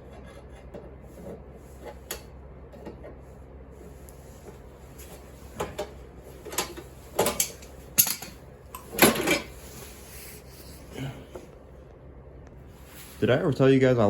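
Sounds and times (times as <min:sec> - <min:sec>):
metal tools clanking: 0:05.6 - 0:09.6.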